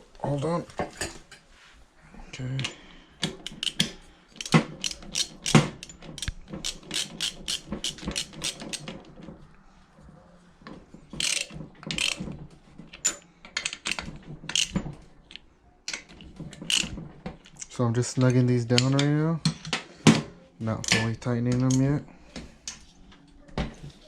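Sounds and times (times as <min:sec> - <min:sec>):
ratchet wrench clicking: 0:03.5 - 0:08.8, 0:11.2 - 0:12.2, 0:16.7 - 0:16.9.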